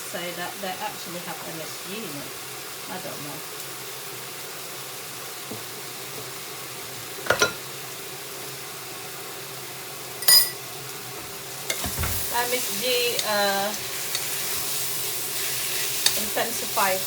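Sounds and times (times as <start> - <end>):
food sizzling in a frying pan: 0.0 - 17.0
utensil clinking against cookware: 7.3 - 7.6, 10.2 - 10.6.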